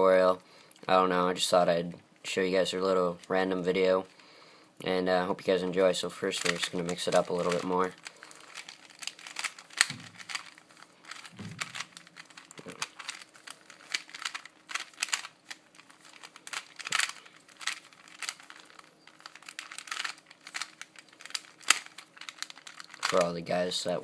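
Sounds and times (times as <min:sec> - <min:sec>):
plastic puzzle cube clicking: 0:06.4 - 0:23.2.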